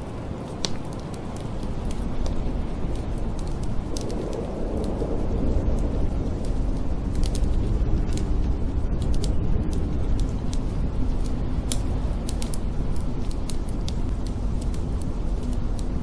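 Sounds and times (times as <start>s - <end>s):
howling wind: 0.0s - 16.0s
wood fire crackling: 0.0s - 16.0s.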